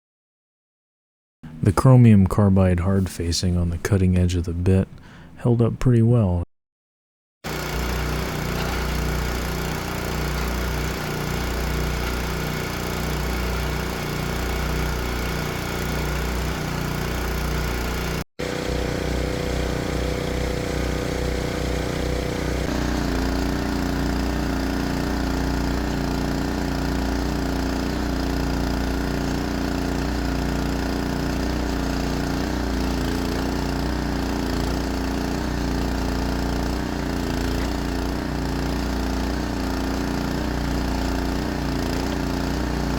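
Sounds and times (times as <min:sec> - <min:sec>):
small gas engine running: 0:07.5 - 0:42.9.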